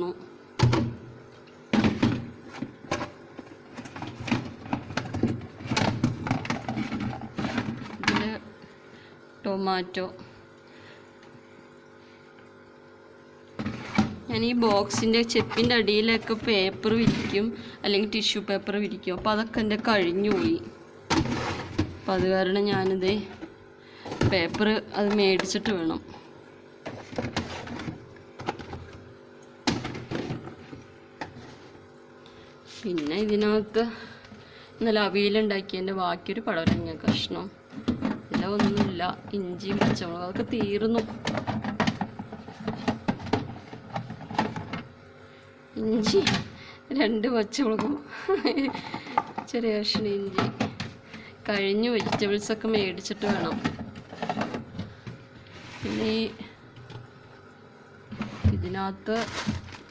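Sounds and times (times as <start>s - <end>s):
plastic containers knocking and clunking: 0.6s - 1.0s, 1.7s - 8.4s, 13.6s - 17.6s, 19.0s - 26.0s, 26.8s - 31.6s, 36.5s - 45.0s, 47.7s - 56.2s, 58.1s - 59.9s.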